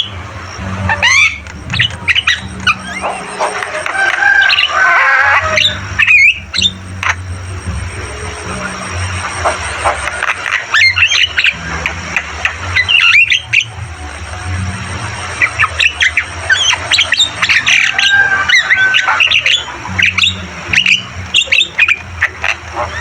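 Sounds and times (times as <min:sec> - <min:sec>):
bird harsh chirps and squawks: 0:00.0 - 0:11.6
steady low hum: 0:00.0 - 0:23.0.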